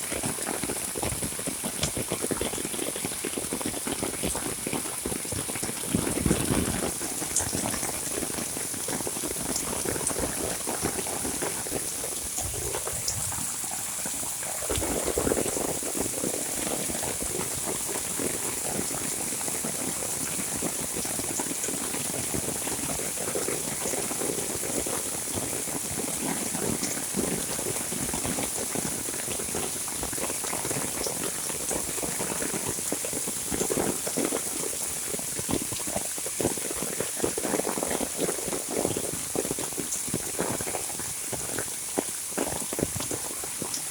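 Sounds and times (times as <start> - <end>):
heavy rain falling: 0.0 - 43.9.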